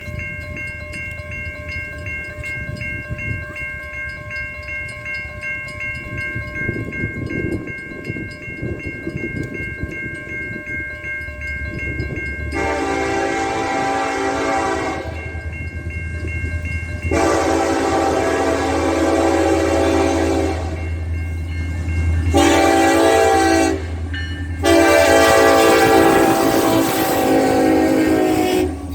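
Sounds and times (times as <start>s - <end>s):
crossing warning bell ringing: 0.0s - 28.9s
diesel locomotive rumble: 6.0s - 28.9s
train air horn blast: 12.6s - 15.2s, 17.1s - 20.8s, 22.3s - 24.0s, 24.6s - 28.9s.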